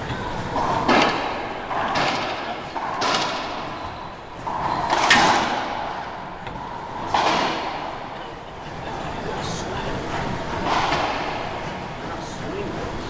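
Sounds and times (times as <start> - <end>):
racquetball hits echoing: 0.5 - 8.4, 10.5 - 11.7.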